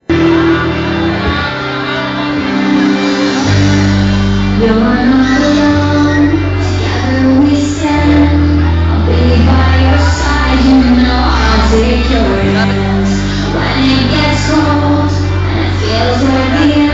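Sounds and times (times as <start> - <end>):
held bass notes: 0.0 - 16.9
woman singing: 4.4 - 16.9.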